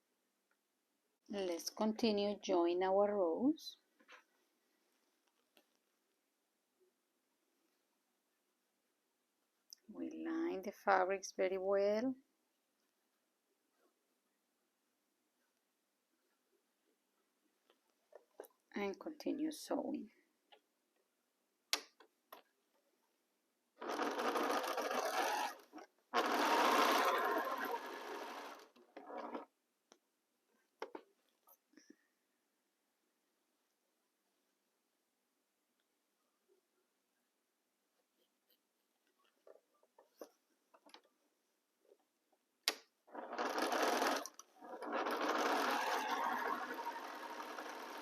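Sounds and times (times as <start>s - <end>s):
sewing machine stitching: 23.8s - 29.5s, 43.1s - 48.0s.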